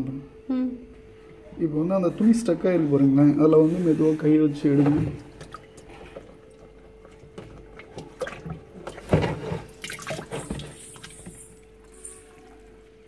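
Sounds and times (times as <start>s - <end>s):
faint steady hum: 0.0s - 13.0s
water splashing and dripping: 5.3s - 11.6s.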